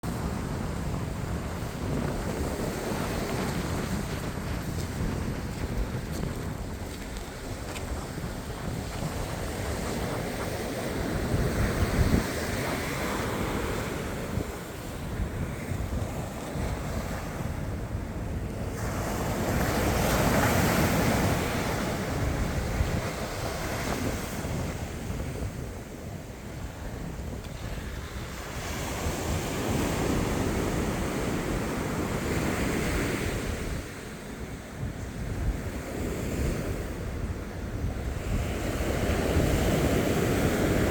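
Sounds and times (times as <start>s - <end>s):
sea waves breaking on shore: 0.0s - 40.9s
wind buffeting microphone: 0.0s - 40.9s.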